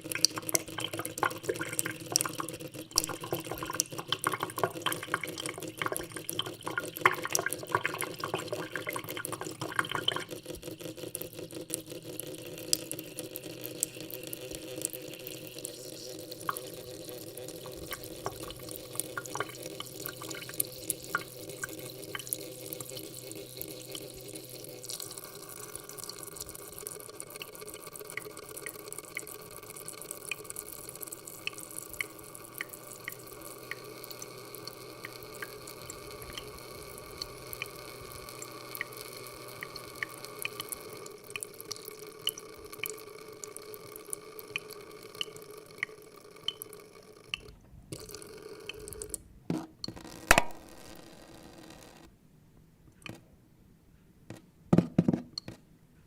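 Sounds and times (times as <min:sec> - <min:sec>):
tap water running into sink: 0:00.0 - 0:29.4, 0:44.5 - 0:50.7.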